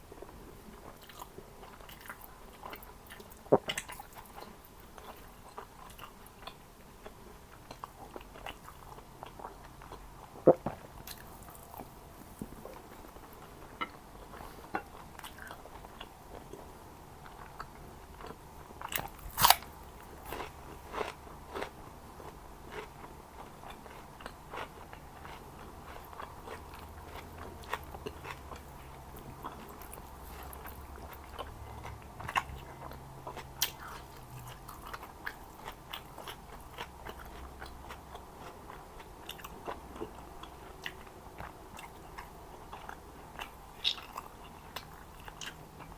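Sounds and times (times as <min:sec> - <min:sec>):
close chewing with wet clicks: 0:00.7 - 0:45.9
loud crunching bite: 0:18.9 - 0:21.2.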